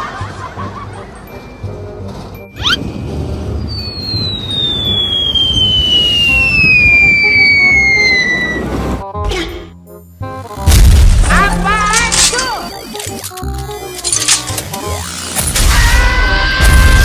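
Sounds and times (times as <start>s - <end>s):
falling bomb whistle: 2.6s - 8.7s.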